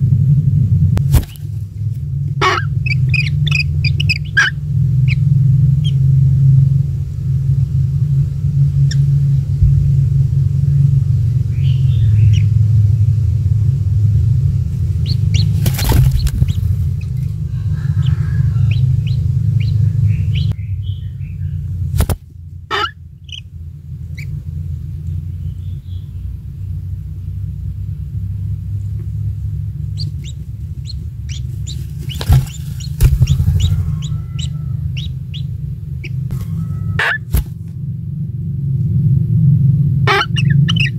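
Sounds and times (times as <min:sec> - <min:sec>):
low steady rumble: 0:00.0 - 0:40.9
high bird chirps: 0:30.0 - 0:37.3.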